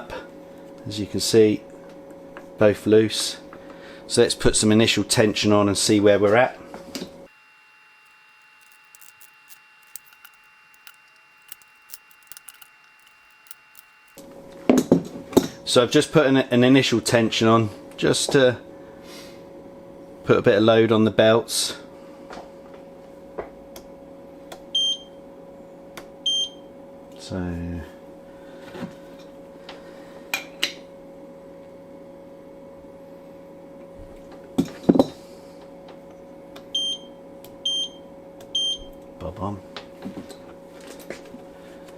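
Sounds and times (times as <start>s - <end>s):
faint steady hum: 7.3s - 14.2s
clicks and knocks on engine belts: 7.4s - 14.2s.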